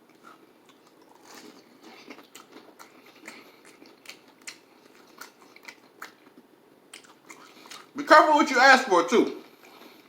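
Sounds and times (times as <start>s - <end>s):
person chewing crunchy food: 0.0s - 8.0s.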